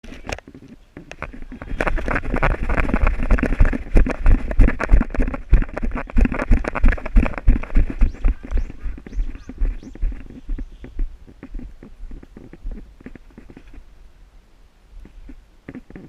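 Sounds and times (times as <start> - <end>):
running footsteps thuds: 1.8 - 13.3.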